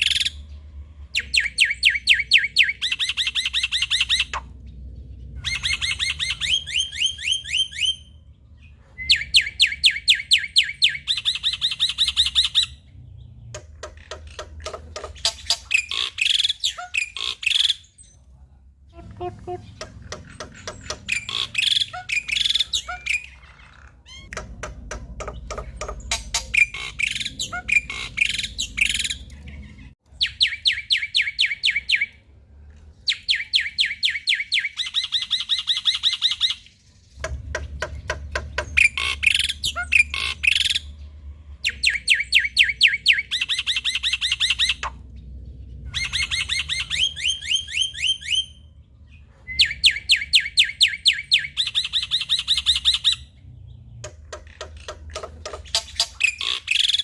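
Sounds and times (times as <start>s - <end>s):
bird singing rattling notes: 0.0s - 18.1s, 18.9s - 32.1s, 33.1s - 57.0s
faint low hum: 3.0s - 9.8s, 36.7s - 50.1s.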